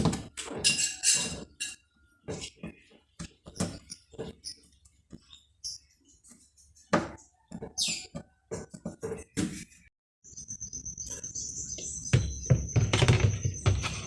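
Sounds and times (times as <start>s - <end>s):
irregular clicks and knocks: 12.1s - 14.0s.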